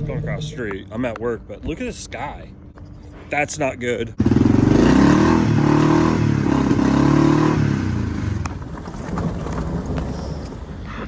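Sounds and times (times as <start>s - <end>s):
vehicle engine accelerating: 4.2s - 11.0s.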